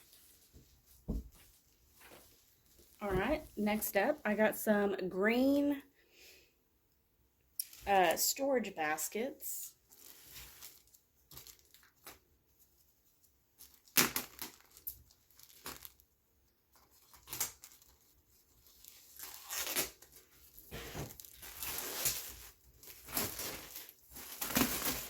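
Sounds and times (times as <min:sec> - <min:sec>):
packaging tearing and crinkling: 0:09.9 - 0:12.2, 0:13.6 - 0:16.0, 0:16.9 - 0:20.3, 0:21.0 - 0:25.0.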